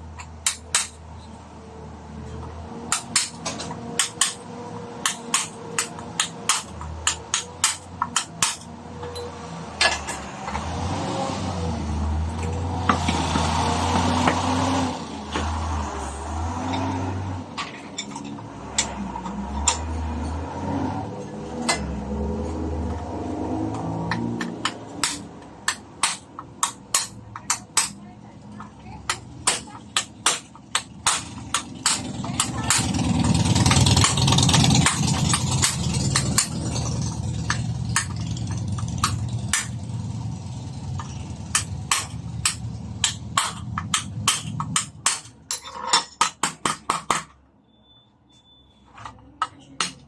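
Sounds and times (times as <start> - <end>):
metal tools clinking: 8.0 - 10.3, 17.6 - 20.3
sharp clicks and knocks: 16.7 - 20.4.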